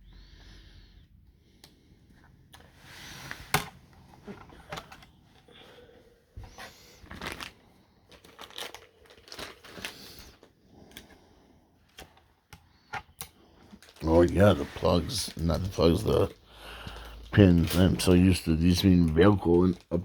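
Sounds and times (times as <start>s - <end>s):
hands handling plastic toy: 6.4s - 11.2s, 11.8s - 20.0s.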